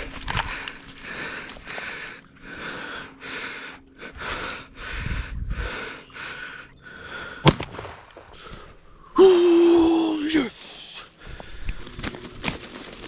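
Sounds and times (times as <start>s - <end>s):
rapid heavy breathing: 0.0s - 7.5s, 10.5s - 13.0s
shotgun shot: 7.4s - 8.2s.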